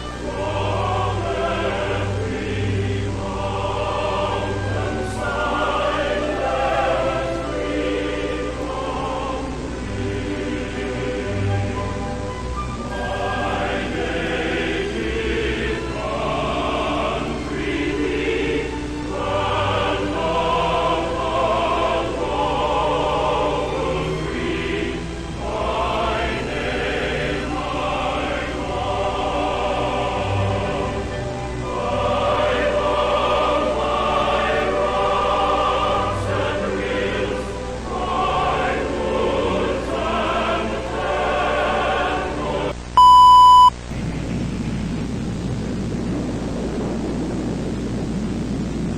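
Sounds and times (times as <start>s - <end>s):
choir singing: 0.0s - 42.8s
loud electronic tone: 42.8s - 46.6s.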